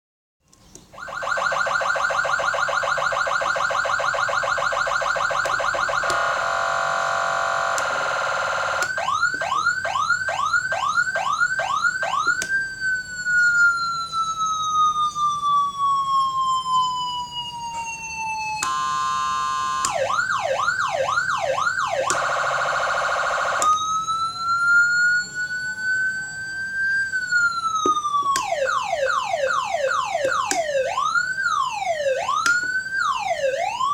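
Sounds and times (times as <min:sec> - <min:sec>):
electronic siren cycling tones: 0:00.9 - 0:33.9.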